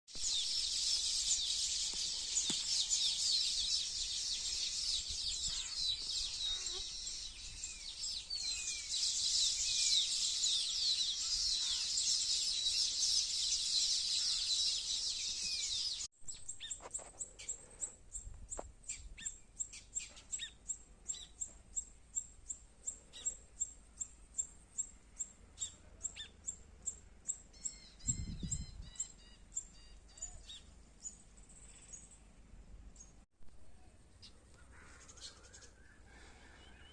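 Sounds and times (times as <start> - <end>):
birds chattering: 0.2 - 17.9, 34.2 - 36.9.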